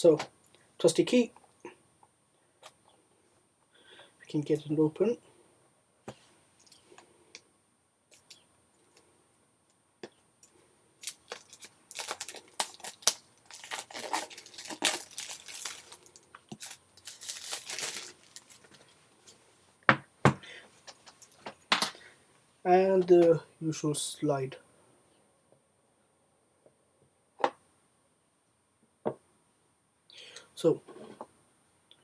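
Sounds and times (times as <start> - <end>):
shrink-wrap tearing and crinkling: 11.0 - 18.8.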